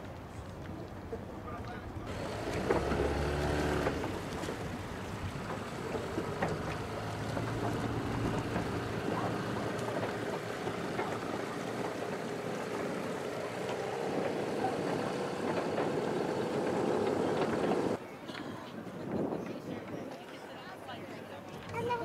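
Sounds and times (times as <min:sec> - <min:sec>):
water noise: 0:00.0 - 0:18.0
wind: 0:00.0 - 0:22.0
boat engine running: 0:02.1 - 0:18.0.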